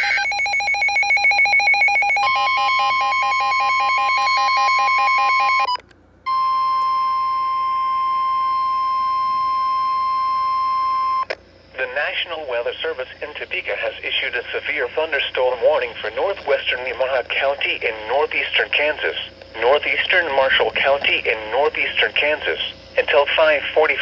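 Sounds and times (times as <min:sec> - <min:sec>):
steady warning alarm tone: 0:00.0 - 0:12.0.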